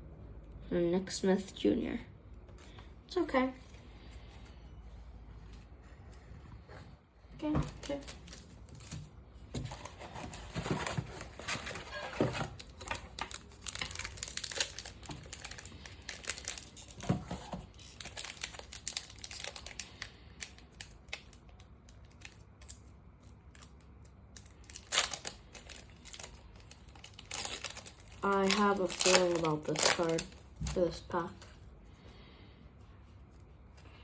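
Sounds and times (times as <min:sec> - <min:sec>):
wrapper crinkling: 0:07.7 - 0:09.0, 0:09.6 - 0:31.5
wrapper ripping: 0:10.8 - 0:21.4, 0:24.4 - 0:31.0.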